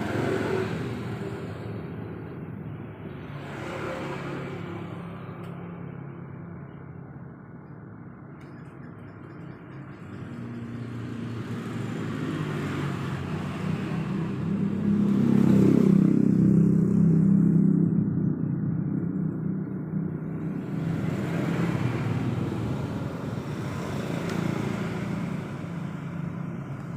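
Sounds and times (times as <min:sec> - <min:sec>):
vehicle engine passing by: 0:00.0 - 0:01.8, 0:10.0 - 0:19.2, 0:20.2 - 0:26.9.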